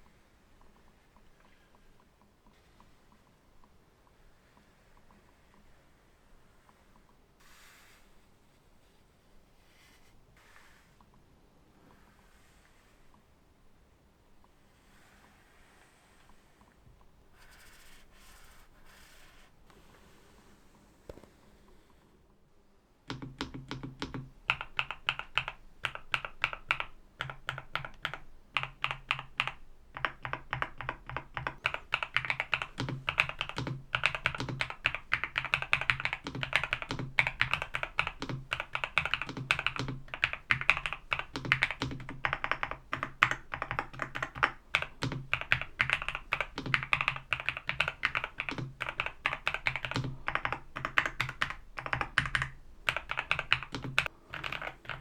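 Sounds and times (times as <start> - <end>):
mechanical keyboard typing: 23.0 - 55.0.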